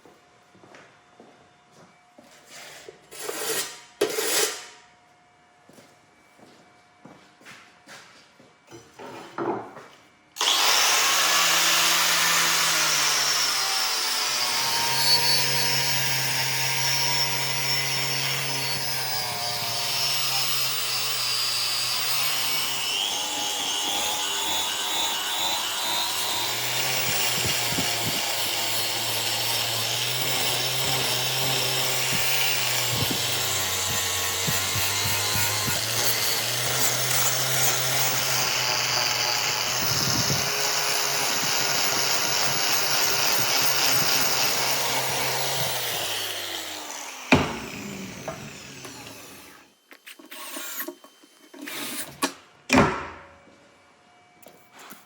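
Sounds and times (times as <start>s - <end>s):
electric grinder grinding steel: 10.4s - 52.3s.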